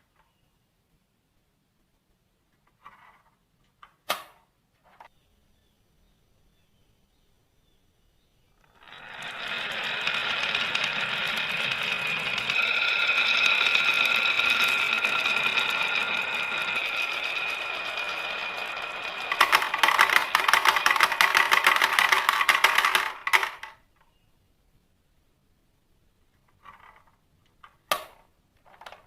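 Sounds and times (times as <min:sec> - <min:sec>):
marbles rolling down a track: 0:08.6 - 0:23.8.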